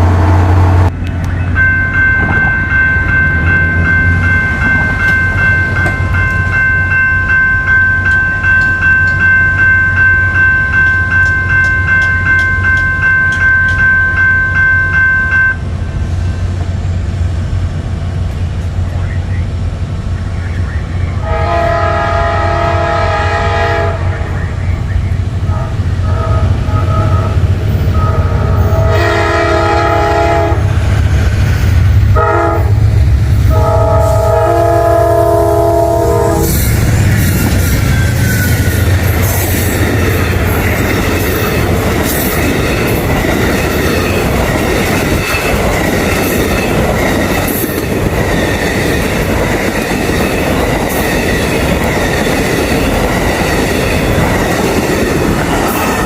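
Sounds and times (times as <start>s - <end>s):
locomotive horn blasts: 21.2s - 24.5s, 25.4s - 30.7s, 32.1s - 32.8s, 33.5s - 36.6s
train wheels clattering over rails: 36.4s - 56.0s.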